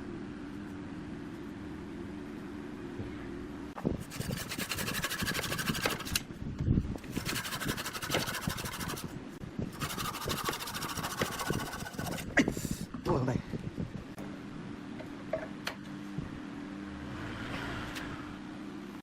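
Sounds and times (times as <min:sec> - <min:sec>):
tool scraping spinning wood: 0:03.9 - 0:06.2, 0:07.0 - 0:12.4
wood lathe running: 0:09.8 - 0:12.2.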